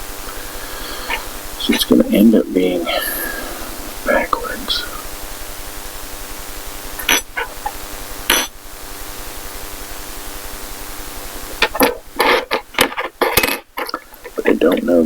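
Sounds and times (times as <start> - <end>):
steady background hiss: 0.0 - 15.0.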